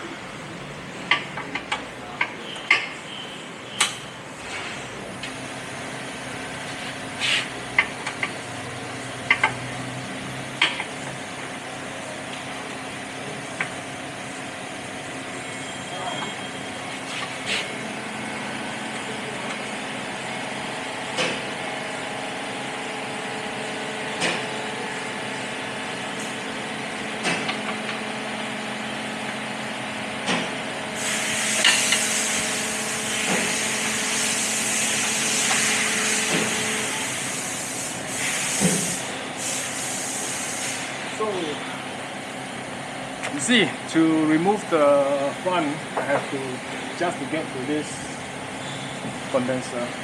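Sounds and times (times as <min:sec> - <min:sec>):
mechanical hum: 0:00.0 - 0:50.0
hiss: 0:31.0 - 0:41.0.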